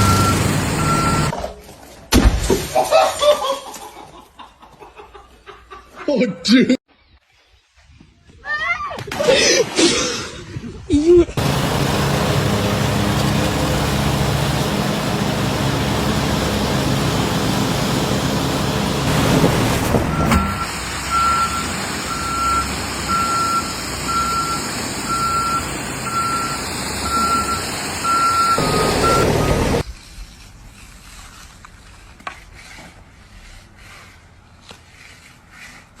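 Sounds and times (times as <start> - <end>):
heavy vehicle engine running: 0.0 - 1.3, 11.4 - 29.8
reversing alarm beeping: 0.0 - 1.3, 20.1 - 29.8.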